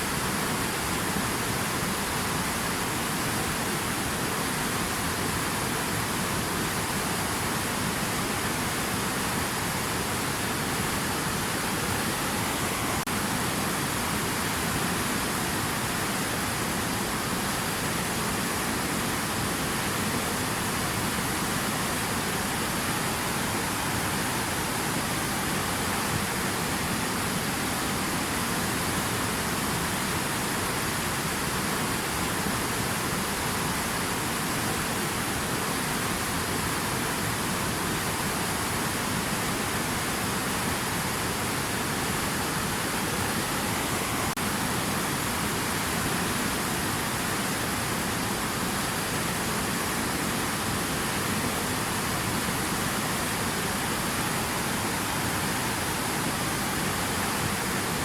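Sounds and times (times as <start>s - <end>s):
rushing water: 0.0s - 58.0s.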